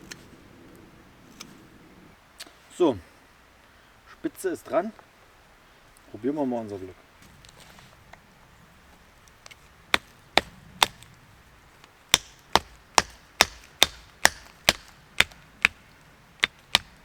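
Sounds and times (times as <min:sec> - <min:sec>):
strikes driving wooden wedge: 0:12.1 - 0:17.0.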